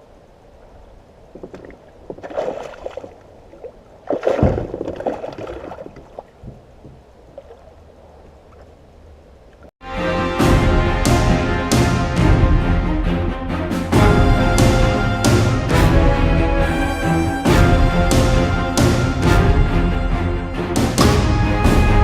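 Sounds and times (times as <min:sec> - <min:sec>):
moving water background: 0:00.0 - 0:09.7
water splashing around kayak: 0:00.5 - 0:09.7.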